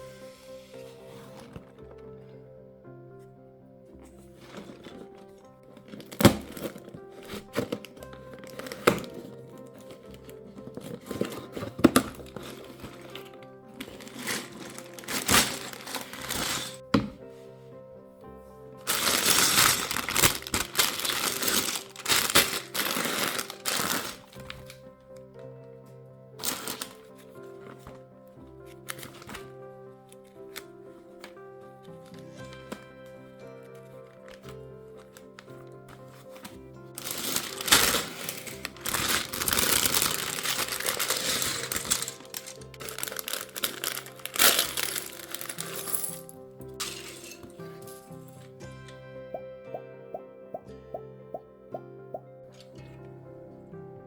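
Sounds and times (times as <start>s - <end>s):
background music: 0.0s - 54.0s
plastic packaging crinkling: 4.1s - 17.0s, 18.8s - 24.9s, 26.4s - 28.1s, 33.8s - 48.6s.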